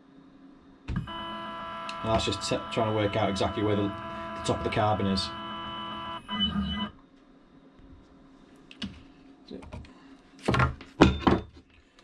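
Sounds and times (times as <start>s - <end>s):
machine drive whining: 0.9s - 7.0s.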